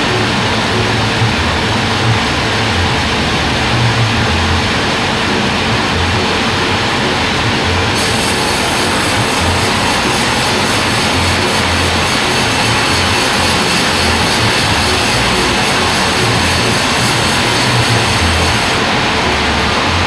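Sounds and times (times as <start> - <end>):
band saw cutting timber: 0.0 - 20.0.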